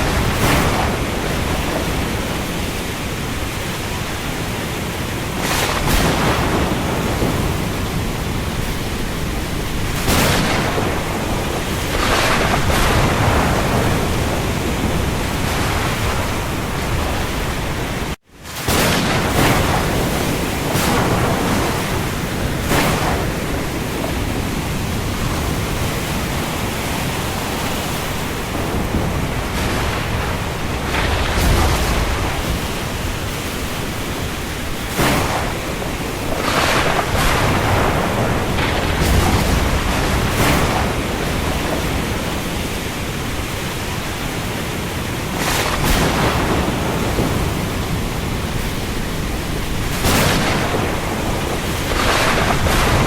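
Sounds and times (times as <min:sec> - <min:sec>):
heavy rain over the sea: 0:00.0 - 0:53.0
waves: 0:00.0 - 0:53.0.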